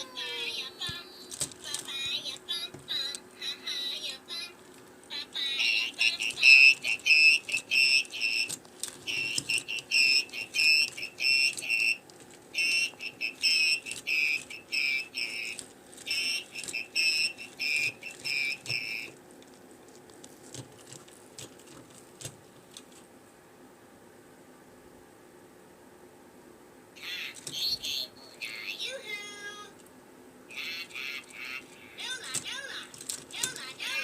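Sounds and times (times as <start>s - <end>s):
toy rapid high-pitched beeps: 9.1s - 12.0s, 12.6s - 19.1s.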